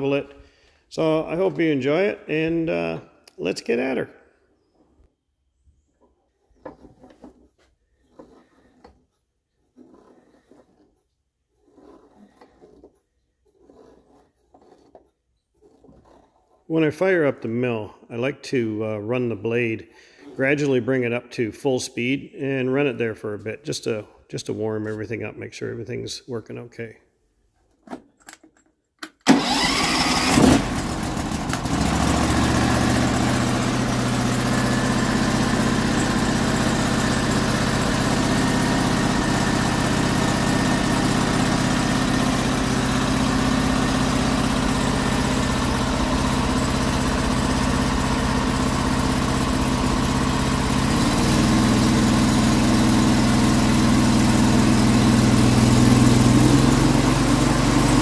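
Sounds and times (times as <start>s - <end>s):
gas engine running: 29.3s - 58.0s.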